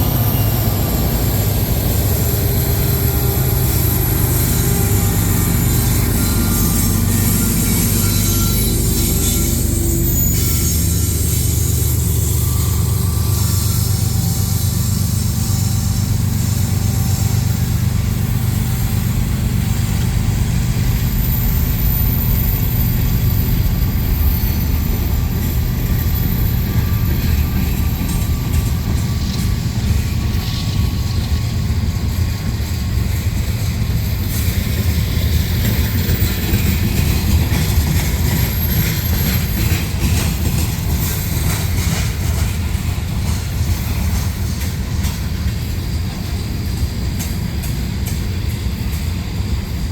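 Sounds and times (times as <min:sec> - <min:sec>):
train rumbling by: 0:00.0 - 0:49.9
faint train wheel clicks: 0:35.6 - 0:49.2.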